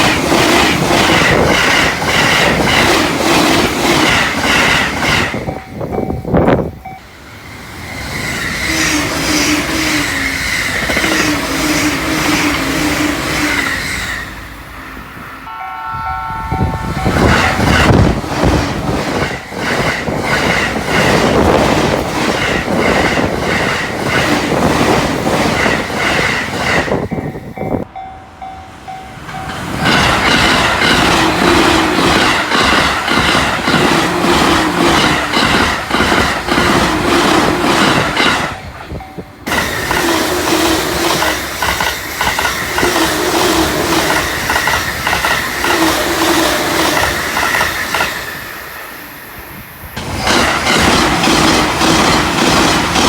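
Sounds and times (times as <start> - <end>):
electric trains passing at speed: 0.0 - 53.0
wheels clattering over rail joints: 29.2 - 48.3, 50.0 - 53.0.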